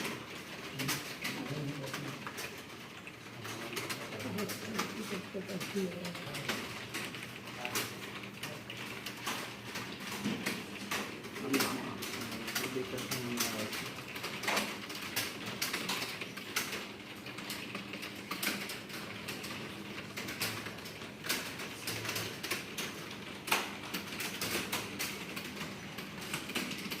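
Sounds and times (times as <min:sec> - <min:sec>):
typing on computer keyboard: 0:00.0 - 0:27.0.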